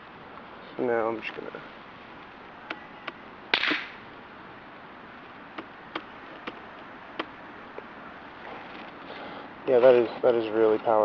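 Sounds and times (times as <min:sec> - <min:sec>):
loud spark crack: 0:03.5 - 0:04.0.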